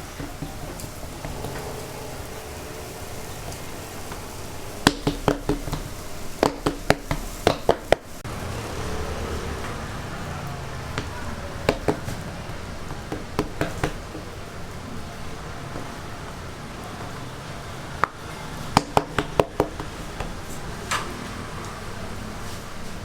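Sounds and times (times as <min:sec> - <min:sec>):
dough knocking and slapping on surface: 0:00.0 - 0:01.7, 0:04.8 - 0:08.2, 0:10.9 - 0:14.4, 0:18.0 - 0:20.6.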